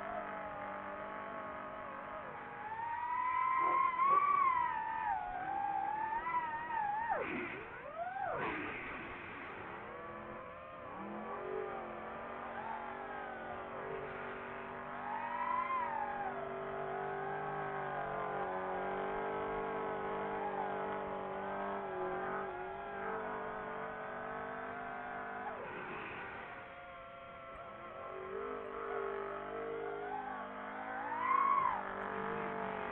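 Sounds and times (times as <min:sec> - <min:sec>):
race truck engine revving hard: 0:08.4 - 0:32.9.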